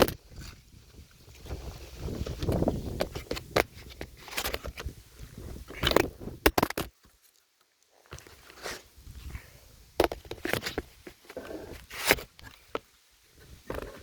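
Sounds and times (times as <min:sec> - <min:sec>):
camera handling bumps and rustles: 0:00.0 - 0:07.4, 0:10.0 - 0:12.9.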